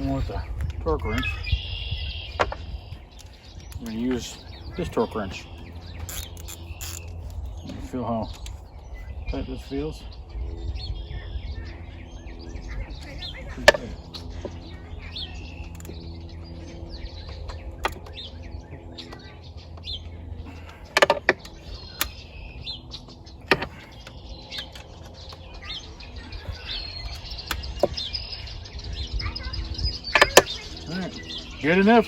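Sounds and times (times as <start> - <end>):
birds chirping: 0.0 - 32.0
low steady hum: 0.0 - 32.0
hand tools clicking and clinking: 5.9 - 7.5, 22.9 - 25.5.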